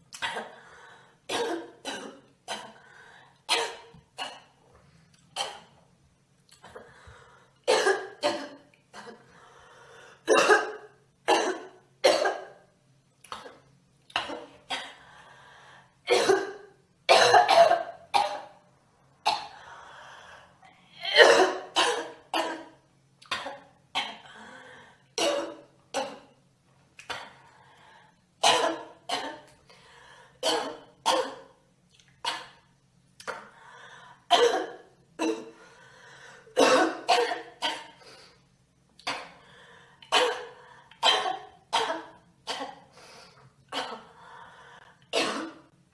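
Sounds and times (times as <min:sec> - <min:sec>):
girl coughing: 0:01.3 - 0:02.8, 0:03.5 - 0:04.5, 0:07.7 - 0:09.2, 0:10.3 - 0:12.5, 0:16.1 - 0:18.5, 0:21.0 - 0:24.2, 0:28.4 - 0:29.5, 0:30.4 - 0:31.5, 0:34.3 - 0:35.5, 0:36.6 - 0:38.0, 0:40.1 - 0:42.8, 0:45.2 - 0:45.7.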